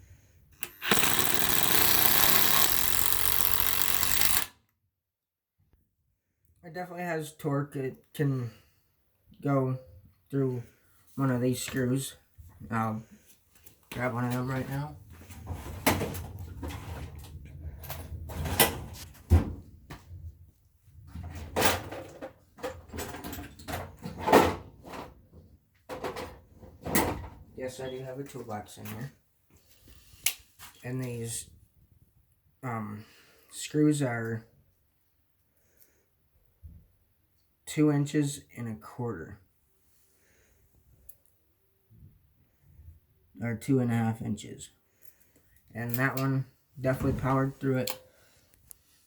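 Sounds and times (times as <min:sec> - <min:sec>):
impact driver rattling: 0:00.6 - 0:04.5.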